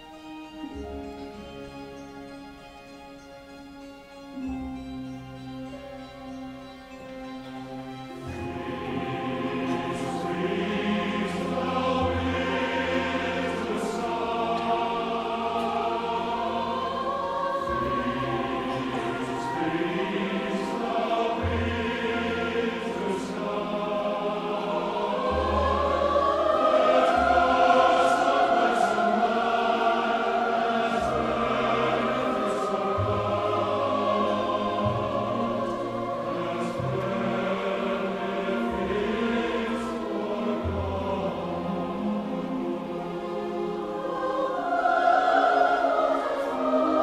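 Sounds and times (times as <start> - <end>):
chamber orchestra: 0.0 - 47.0
mixed choir singing: 7.0 - 47.0.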